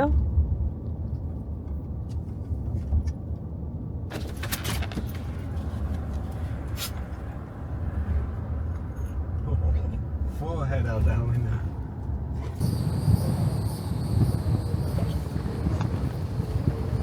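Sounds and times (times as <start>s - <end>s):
car rumbling: 0.0s - 17.0s
wind noise: 11.8s - 17.0s.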